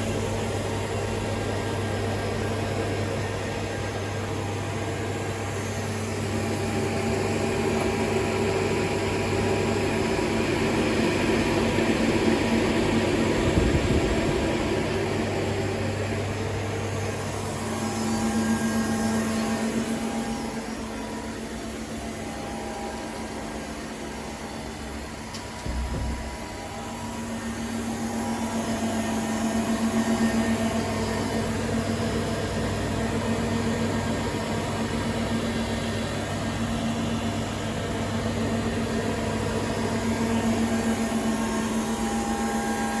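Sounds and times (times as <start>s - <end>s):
low thump: 25.6s - 26.5s.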